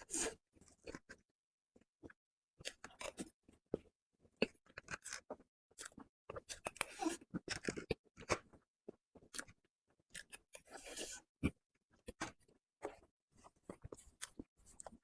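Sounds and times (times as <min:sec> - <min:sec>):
chewing and mouth sounds: 0:02.0 - 0:15.0.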